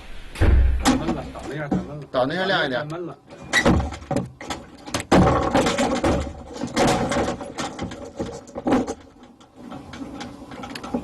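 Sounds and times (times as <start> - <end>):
foley props tapping and knocking: 3.5 - 11.0.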